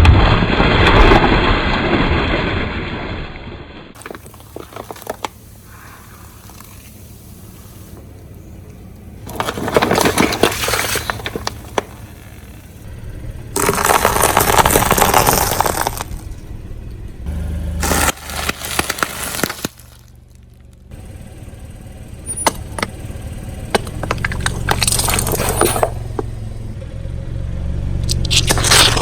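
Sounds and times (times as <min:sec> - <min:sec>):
tyres crushing brittle objects: 0:04.0 - 0:16.5, 0:17.3 - 0:20.9, 0:23.7 - 0:26.4, 0:28.0 - 0:29.0.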